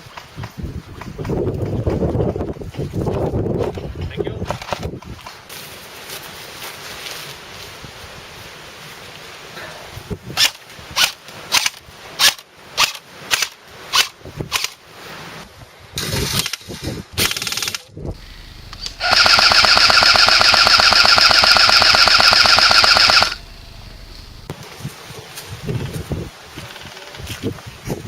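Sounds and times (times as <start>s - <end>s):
airsoft gun full-auto burst: 17.2s - 24.5s
airsoft gun single shots: 17.5s - 23.5s.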